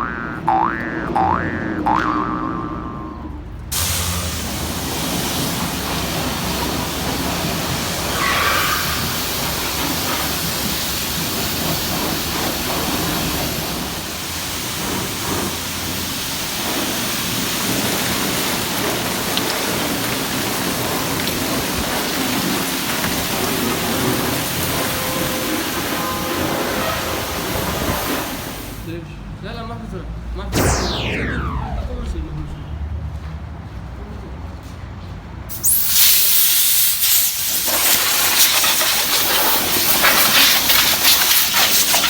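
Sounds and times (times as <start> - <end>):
motorcycle engine humming: 0.0 - 4.7.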